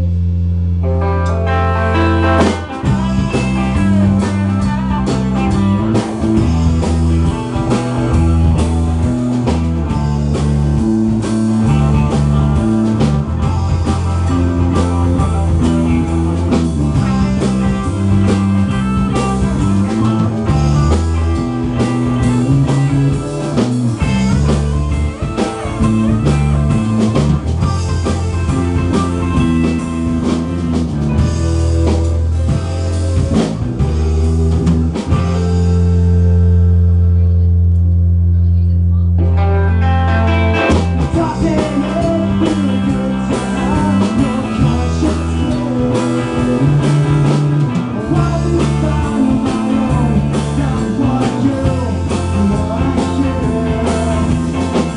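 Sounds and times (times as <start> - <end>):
live rock band playing: 0.0 - 54.9.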